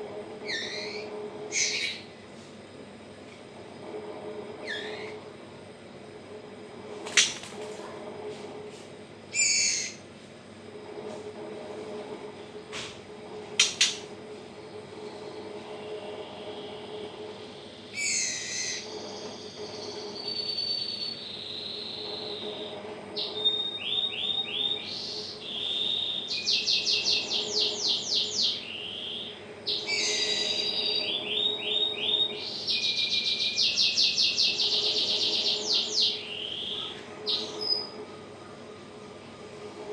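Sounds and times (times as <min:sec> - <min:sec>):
steady low hum: 0:00.0 - 0:39.9
bird chicks chirping: 0:13.6 - 0:14.1.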